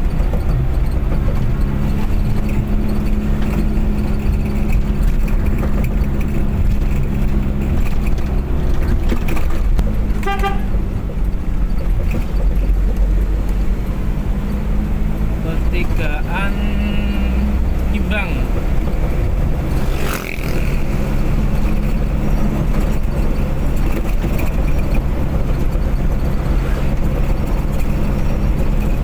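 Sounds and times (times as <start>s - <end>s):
car engine and road noise: 0.0s - 29.0s
vehicle horn toot: 10.2s - 10.8s.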